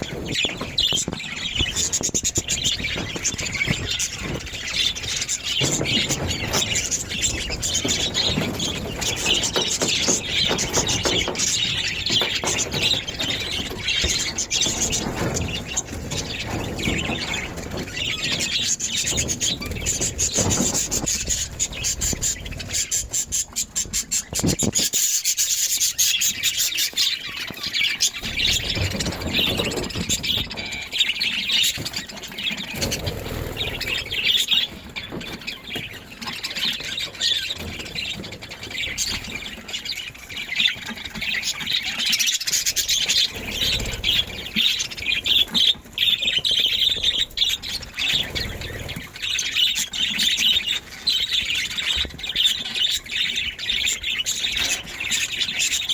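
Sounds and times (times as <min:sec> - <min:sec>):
scratching and rubbing: 0:00.0 - 0:25.1
budgerigars chirping: 0:00.0 - 0:55.9.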